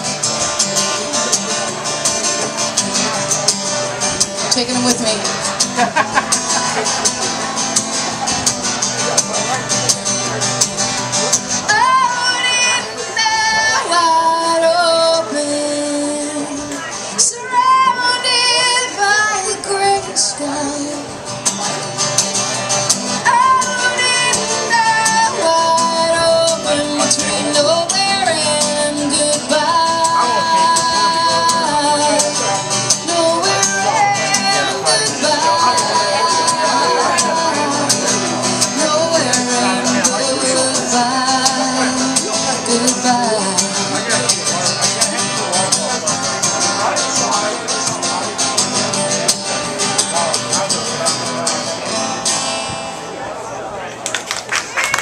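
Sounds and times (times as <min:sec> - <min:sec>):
country-pop song on acoustic guitar: 0:00.0 - 0:53.8.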